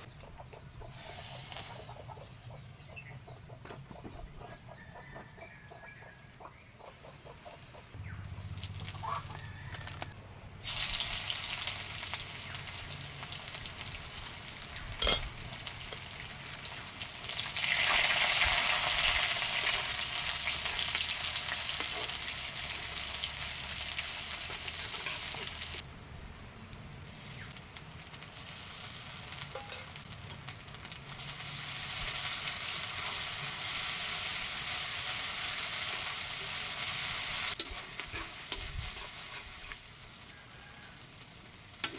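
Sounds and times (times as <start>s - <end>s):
food sizzling in hot oil: 10.6s - 25.8s, 27.0s - 41.9s.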